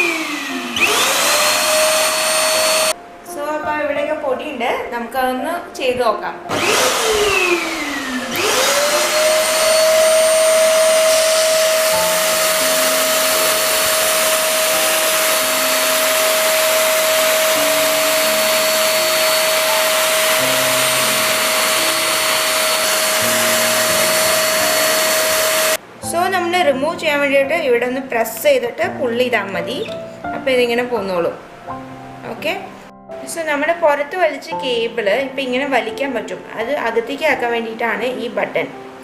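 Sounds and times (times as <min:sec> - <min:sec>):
vacuum cleaner whine: 0:00.0 - 0:03.0, 0:06.5 - 0:25.8.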